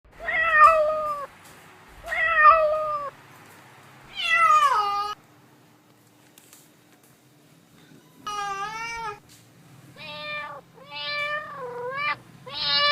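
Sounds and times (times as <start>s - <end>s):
kitten meowing: 10.0s - 12.9s.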